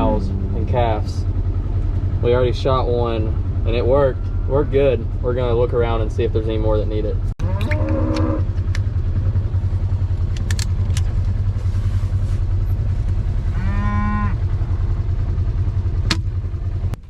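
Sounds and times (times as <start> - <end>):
cow mooing: 0.0 - 1.1, 7.4 - 8.5, 13.5 - 14.4
vehicle engine idling: 0.0 - 7.3, 8.0 - 17.0.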